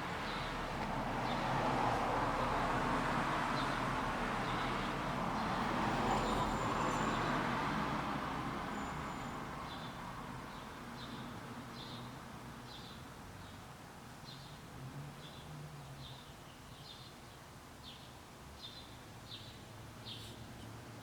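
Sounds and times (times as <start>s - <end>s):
passing vehicle: 0.0s - 13.5s, 14.3s - 16.2s.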